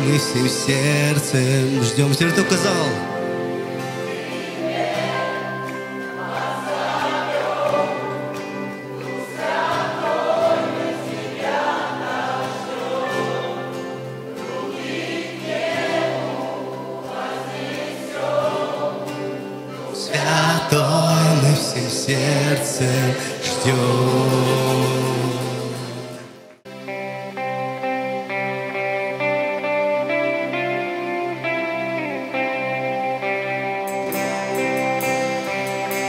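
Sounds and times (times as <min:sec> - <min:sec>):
congregation singing: 0:00.0 - 0:26.7
band playing held chords: 0:00.0 - 0:36.0.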